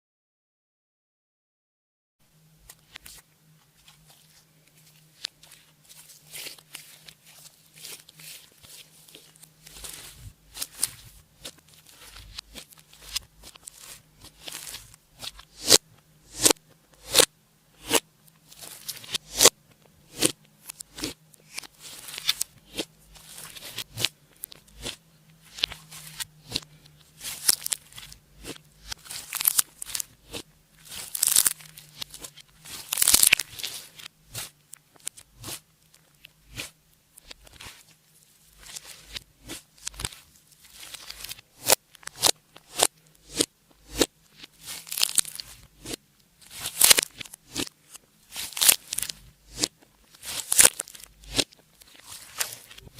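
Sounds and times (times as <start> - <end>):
slime clicking and squelching: 20.1 - 35.6, 38.6 - 52.8.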